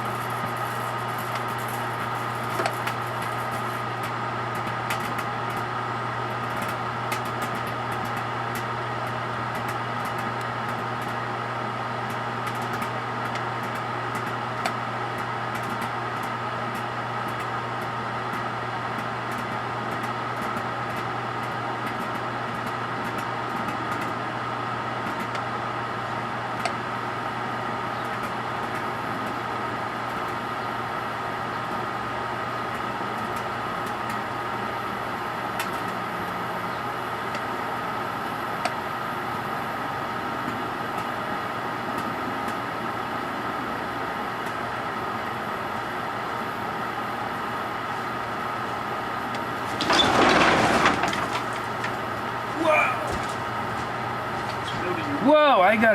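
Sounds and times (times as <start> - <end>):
microwave oven humming: 0.0 - 55.9.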